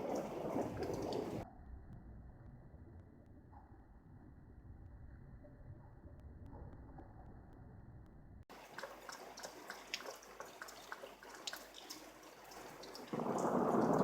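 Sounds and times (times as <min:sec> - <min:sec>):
rain: 0:00.0 - 0:01.4, 0:08.5 - 0:14.0
thunder: 0:00.0 - 0:01.4, 0:13.1 - 0:14.0
water drops pattering: 0:00.0 - 0:01.4, 0:08.5 - 0:14.0.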